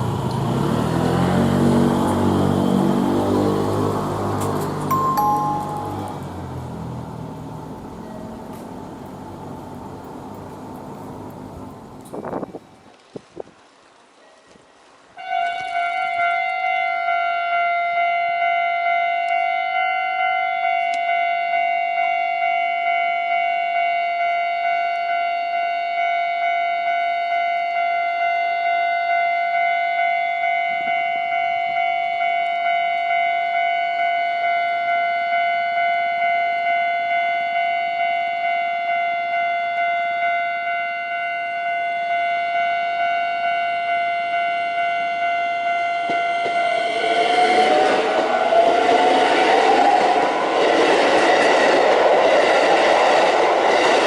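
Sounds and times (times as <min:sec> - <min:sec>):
level-crossing alarm bell: 0:04.9 - 0:06.6, 0:17.1 - 0:47.8.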